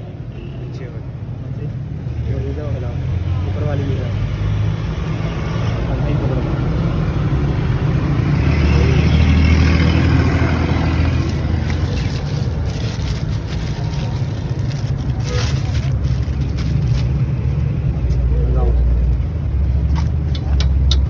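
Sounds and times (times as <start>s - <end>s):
car engine and road rumble: 0.0s - 21.0s.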